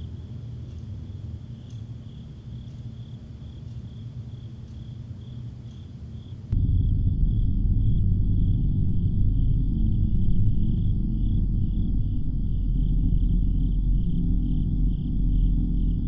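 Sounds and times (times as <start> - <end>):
insects chirping: 0.0 - 16.0
low rumble: 6.5 - 16.0.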